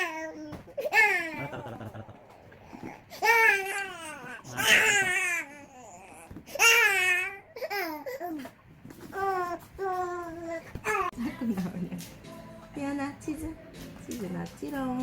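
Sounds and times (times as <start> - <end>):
baby crying: 2.6 - 8.4.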